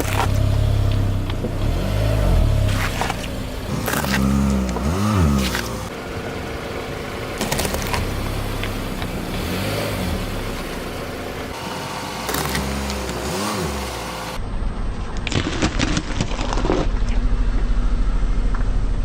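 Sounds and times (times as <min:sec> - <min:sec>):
objects crushed under tyres: 0:00.0 - 0:05.9
car engine running: 0:00.0 - 0:14.4.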